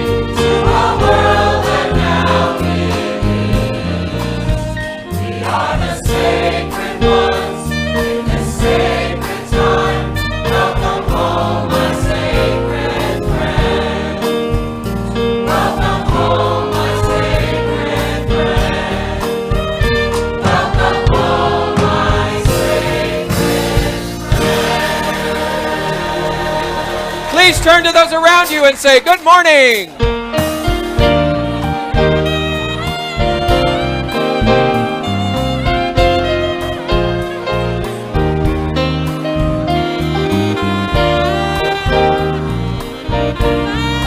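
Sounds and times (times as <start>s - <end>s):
choir singing gospel song: 0.0s - 28.6s, 41.3s - 44.0s
instrumental accompaniment: 0.0s - 44.0s.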